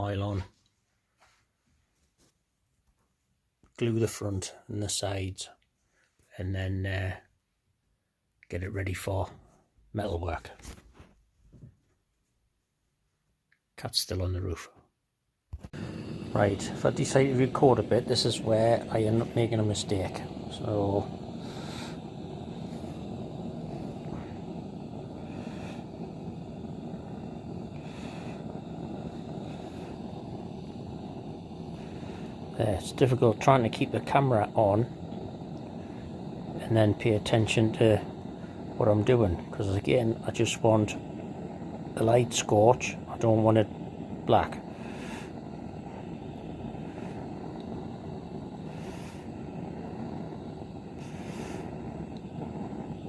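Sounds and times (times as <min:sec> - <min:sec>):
blowtorch flame roaring: 0:15.5 - 0:53.0.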